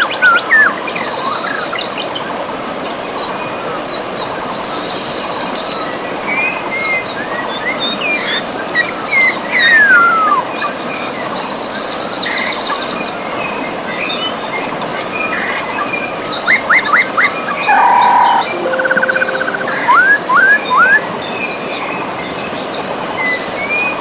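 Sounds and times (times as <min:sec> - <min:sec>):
birds singing: 0:15.8 - 0:24.0.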